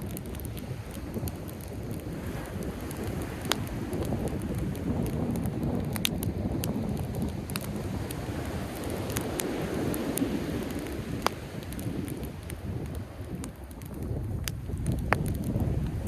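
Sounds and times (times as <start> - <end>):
campfire crackling and popping: 0.0 - 16.0
wind: 0.0 - 16.0
sea waves: 2.0 - 4.9, 7.5 - 13.2.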